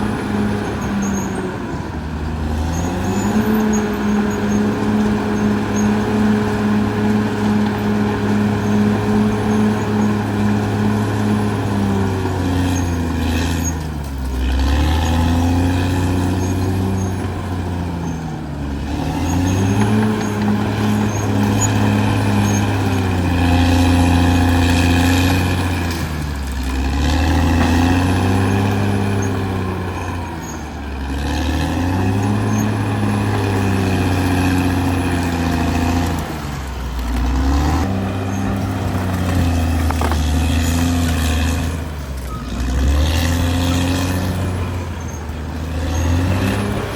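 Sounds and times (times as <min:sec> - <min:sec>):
bulldozer diesel engine running hard: 0:00.0 - 0:46.9.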